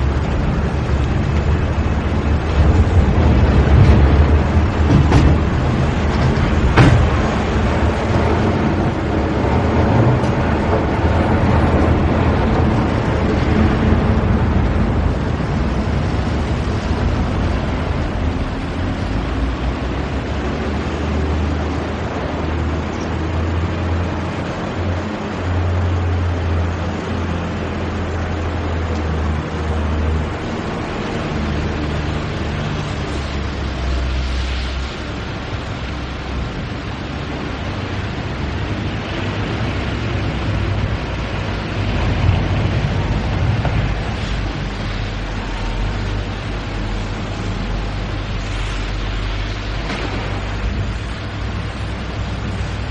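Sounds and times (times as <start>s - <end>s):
factory machinery din: 0.0s - 22.7s, 36.4s - 52.9s
deep machinery hum: 0.0s - 52.9s.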